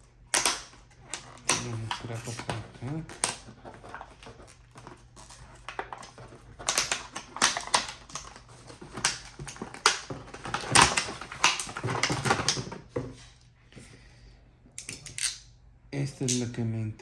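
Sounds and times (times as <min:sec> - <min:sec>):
packaging crinkling: 0:00.3 - 0:12.8.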